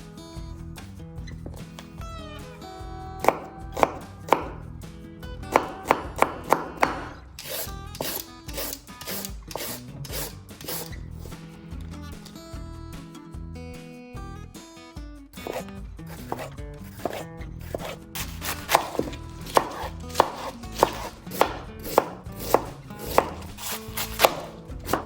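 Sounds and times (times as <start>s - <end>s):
background music: 0.0s - 25.0s
knife chopping on cutting board: 3.2s - 4.6s, 5.5s - 11.4s, 15.4s - 25.0s.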